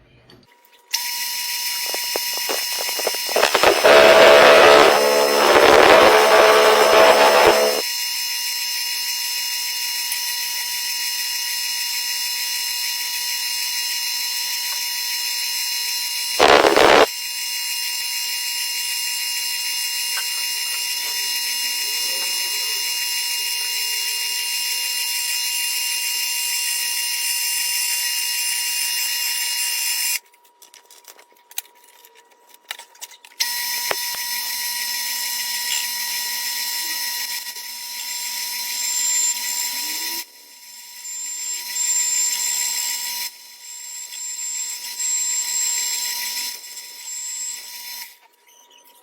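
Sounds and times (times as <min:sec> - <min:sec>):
lathe whining: 0:01.8 - 0:07.8, 0:16.4 - 0:17.1.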